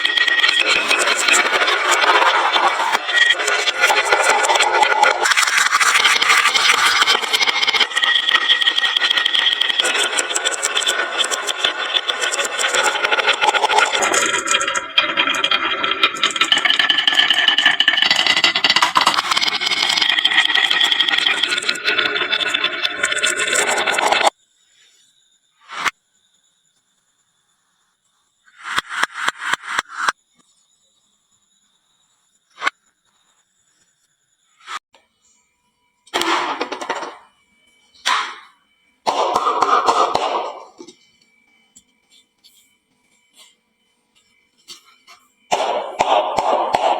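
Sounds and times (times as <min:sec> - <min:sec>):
marbles clattering on wooden run: 0:00.0 - 0:24.3, 0:36.2 - 0:37.3.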